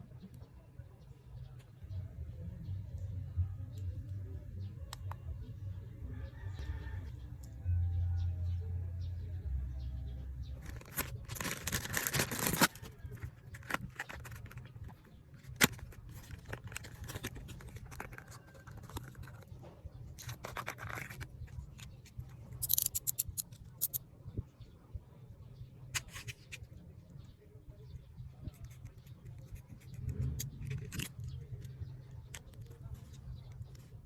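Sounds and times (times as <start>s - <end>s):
steady low hum: 1.0s - 11.8s
packages rustling and scraping: 10.6s - 22.0s
sharp clicks: 22.6s - 24.0s.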